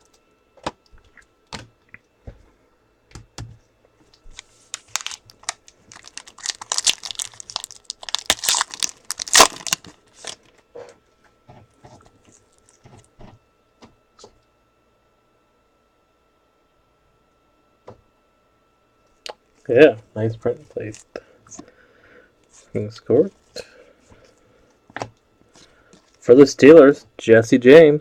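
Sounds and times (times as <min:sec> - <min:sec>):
wrapper tearing and crinkling: 0:04.4 - 0:10.5.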